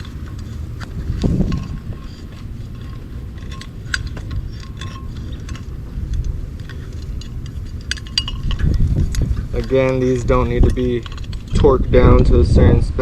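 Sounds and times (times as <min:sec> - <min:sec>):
small clicks and scrapes: 0:00.0 - 0:11.8
steady low rumble: 0:00.0 - 0:13.0.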